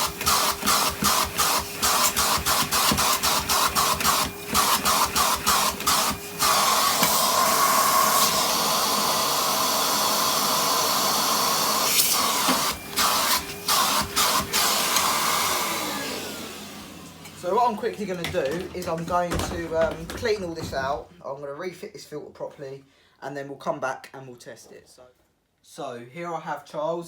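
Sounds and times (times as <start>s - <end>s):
vacuum motor winding down: 0.0s - 17.9s
vacuum cleaner running: 0.0s - 21.0s.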